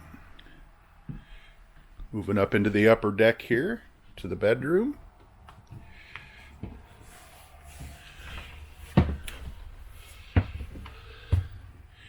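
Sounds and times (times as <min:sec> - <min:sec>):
footsteps climbing steps: 0:05.0 - 0:11.8
faint rustling: 0:05.2 - 0:11.9.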